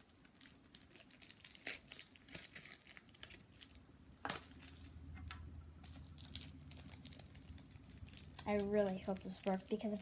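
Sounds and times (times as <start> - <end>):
plastic packet crinkling: 0.0 - 10.0.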